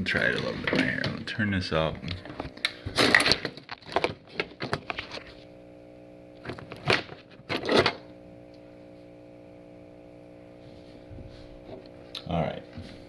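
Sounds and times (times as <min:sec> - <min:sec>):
inverter electrical hum: 0:00.0 - 0:13.0
handling rustling and scraping: 0:02.0 - 0:05.5.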